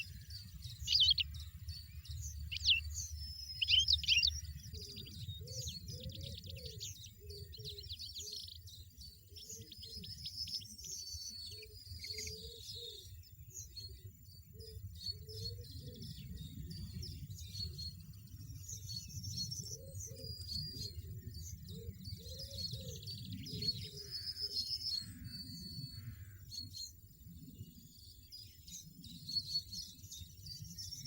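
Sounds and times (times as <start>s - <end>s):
goldfinch twittering: 0.0s - 8.2s.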